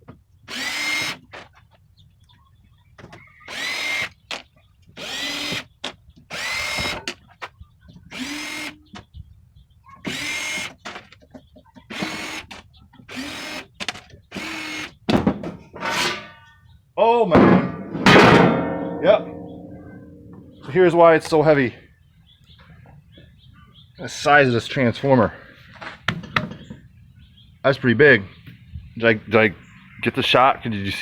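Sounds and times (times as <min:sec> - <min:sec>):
cordless drill whirring: 0:00.5 - 0:01.2, 0:03.4 - 0:04.2, 0:05.0 - 0:05.7, 0:06.3 - 0:07.0, 0:08.1 - 0:08.8, 0:10.0 - 0:10.8, 0:11.9 - 0:12.5, 0:13.1 - 0:13.7, 0:14.3 - 0:15.0.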